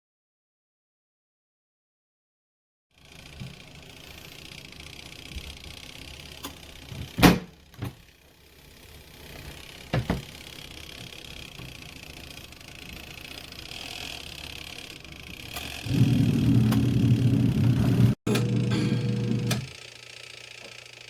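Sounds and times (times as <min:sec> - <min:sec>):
washing machine motor hum: 0:08.6 - 0:21.0.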